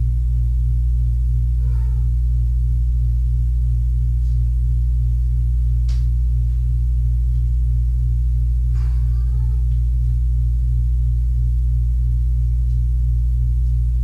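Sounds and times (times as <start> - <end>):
steady low hum: 0.0 - 14.0
kitten meow: 1.6 - 2.2, 8.8 - 9.8.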